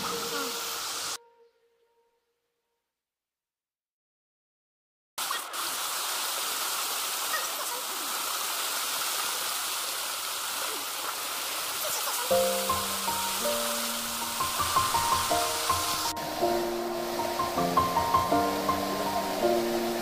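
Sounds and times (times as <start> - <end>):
waterfall rushing: 5.2 - 20.0
music tones: 12.3 - 20.0.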